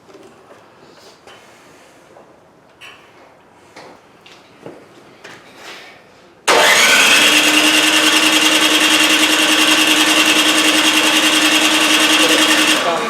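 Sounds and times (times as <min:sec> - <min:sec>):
starter motor cranking whirr: 0:06.5 - 0:13.0.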